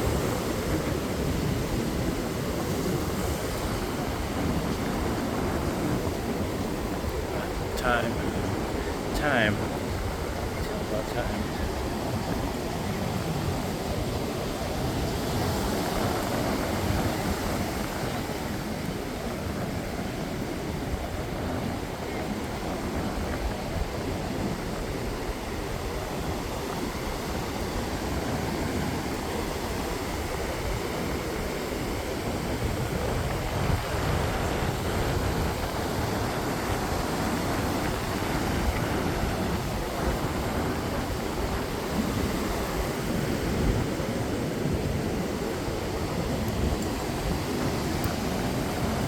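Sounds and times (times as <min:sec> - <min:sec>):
ocean surf rushing: 0:00.0 - 0:49.0
wind on microphone: 0:00.0 - 0:49.0.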